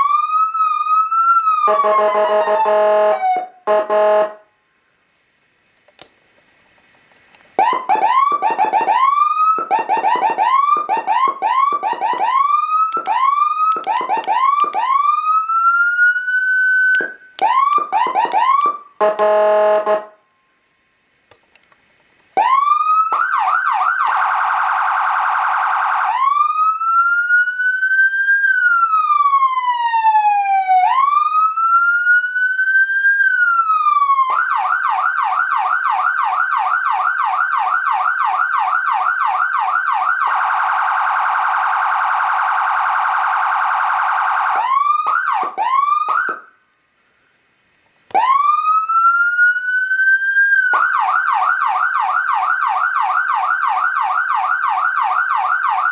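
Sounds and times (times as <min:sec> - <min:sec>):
electronic siren cycling tones: 0:07.6 - 0:20.3, 0:22.4 - 0:46.6, 0:48.1 - 0:55.9.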